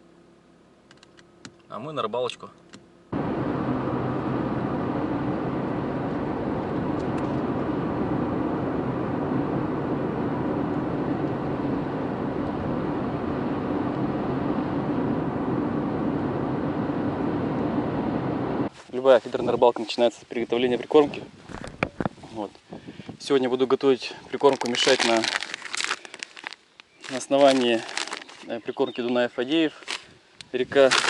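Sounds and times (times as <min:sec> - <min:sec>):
car interior road and engine noise: 0:00.0 - 0:22.7.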